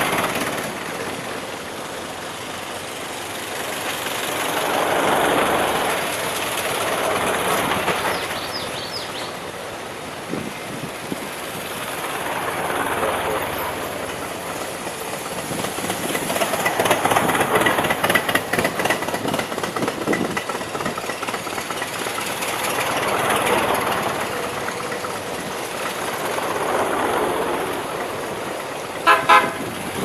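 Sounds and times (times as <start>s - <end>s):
fast clattering rattle: 0.0s - 1.2s, 13.9s - 27.2s
old cars passing by: 0.0s - 30.0s
car horn blasts: 29.0s - 29.7s.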